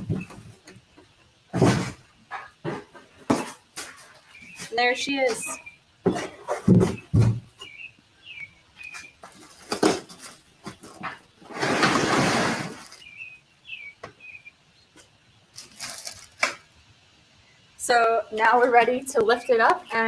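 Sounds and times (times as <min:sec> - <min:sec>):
loud rustle: 0:09.3 - 0:13.1.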